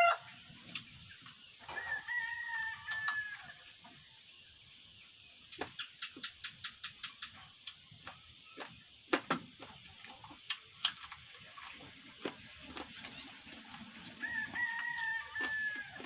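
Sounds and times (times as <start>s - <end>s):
chewing and lip-smacking: 5.6s - 16.0s.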